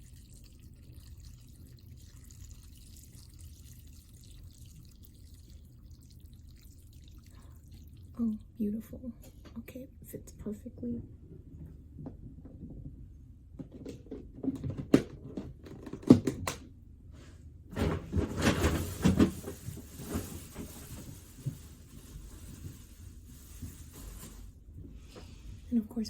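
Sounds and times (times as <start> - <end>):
rustling: 17.8 - 25.5.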